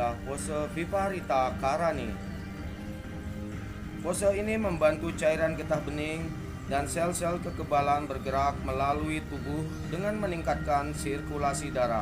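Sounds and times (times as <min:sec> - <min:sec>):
music with sustained notes: 0:00.0 - 0:12.0.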